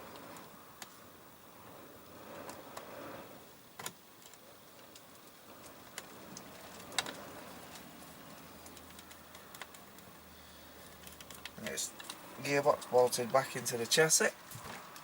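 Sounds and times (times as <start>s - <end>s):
small parts and tools clicking: 3.8s - 13.4s.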